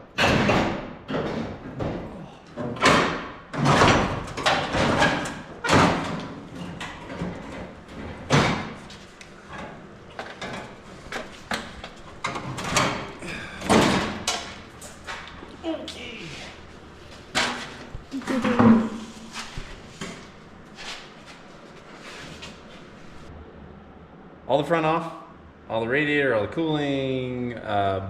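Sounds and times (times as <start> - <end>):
metal parts knocking and clanking: 0.2 - 8.8, 9.5 - 15.4.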